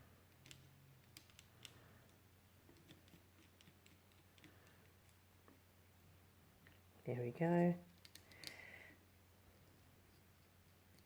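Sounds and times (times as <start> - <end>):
faint steady hum: 0.0 - 11.0
screwdriver clicking on small screws: 0.3 - 1.8, 8.0 - 8.6.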